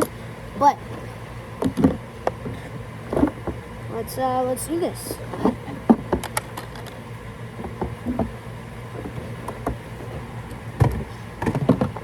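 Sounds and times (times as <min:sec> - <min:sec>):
steady low hum: 0:00.0 - 0:12.0
handling clicks and knocks: 0:00.9 - 0:03.7, 0:05.3 - 0:07.0, 0:07.6 - 0:12.0.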